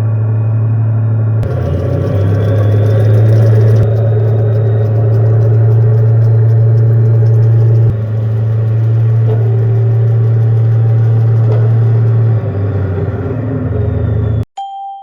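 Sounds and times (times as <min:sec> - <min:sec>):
simulated tank engine drone: 0:00.0 - 0:14.4.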